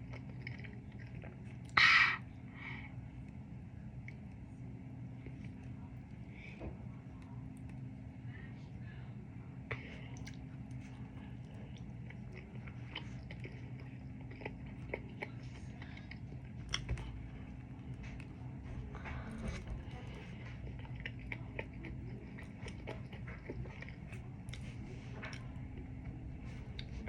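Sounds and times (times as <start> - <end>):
biting and chewing food: 0.0 - 2.0, 9.7 - 27.0
steady low hum: 0.0 - 27.0.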